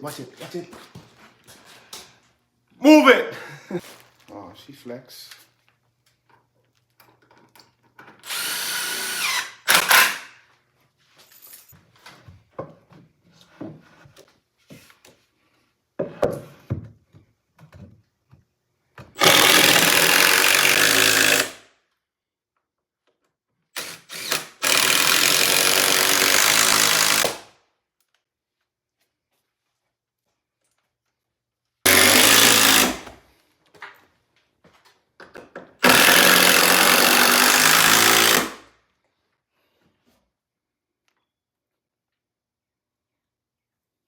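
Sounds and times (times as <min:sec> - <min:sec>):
power drill running: 0:08.2 - 0:10.4, 0:19.2 - 0:21.6, 0:23.8 - 0:27.4, 0:31.9 - 0:33.1, 0:35.8 - 0:38.6.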